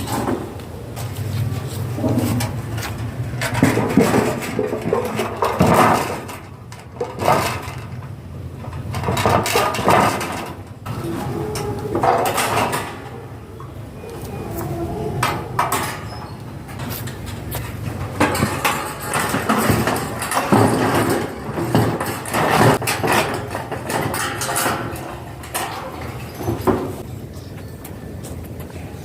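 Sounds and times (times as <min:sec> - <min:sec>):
knocks and clatter of wood: 0:02.0 - 0:13.2, 0:15.2 - 0:27.1.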